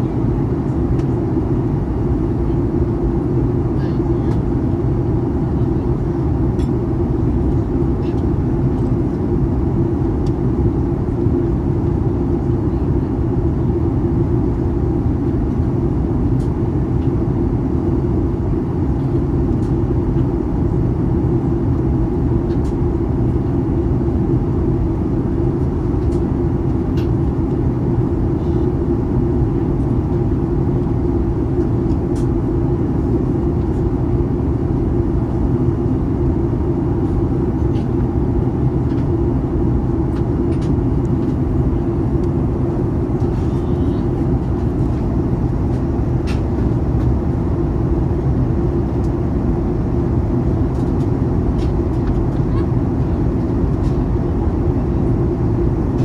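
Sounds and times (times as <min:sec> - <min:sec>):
airplane cabin engine drone: 0:00.0 - 0:56.0
low turbofan hum: 0:00.0 - 0:56.0.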